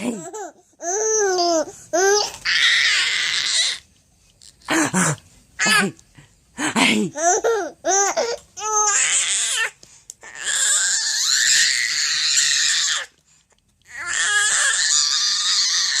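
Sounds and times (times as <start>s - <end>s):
baby crying and screeching: 0.8s - 3.8s, 7.2s - 13.1s, 13.9s - 16.0s.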